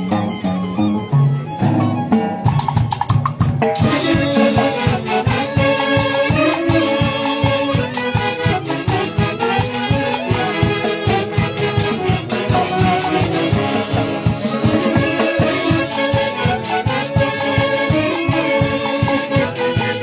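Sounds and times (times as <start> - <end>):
band dance music: 0.0 - 20.0
steady drum beat: 1.6 - 20.0
wind instruments: 3.8 - 20.0.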